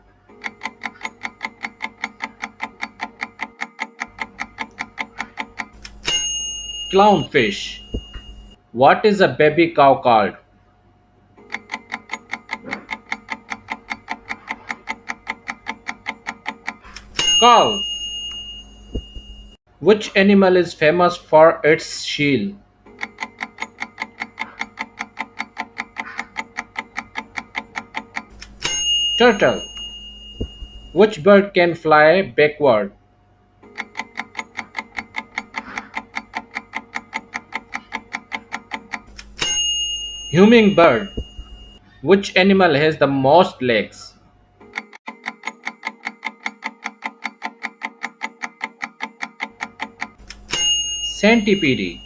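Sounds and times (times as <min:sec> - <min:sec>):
fast clock-like ticking: 0:00.4 - 0:05.8, 0:11.5 - 0:17.8, 0:22.9 - 0:28.4, 0:33.7 - 0:39.1, 0:44.8 - 0:50.2
faint steady tone: 0:06.1 - 0:08.6, 0:39.4 - 0:42.0.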